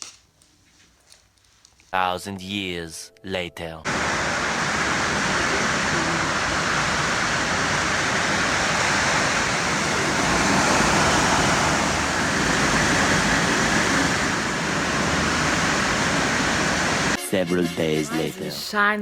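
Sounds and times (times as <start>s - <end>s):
steady rushing noise: 3.9s - 17.2s.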